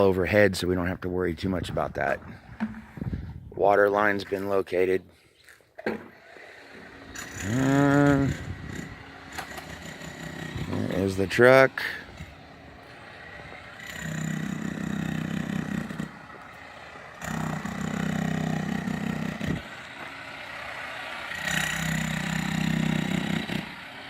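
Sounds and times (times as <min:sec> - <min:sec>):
engine revving: 0:06.2 - 0:24.0.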